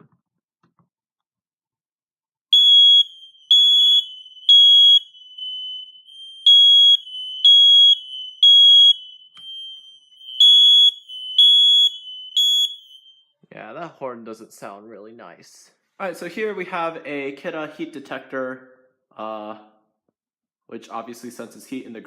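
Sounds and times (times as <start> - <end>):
smoke alarm beeping: 2.5 - 13.4.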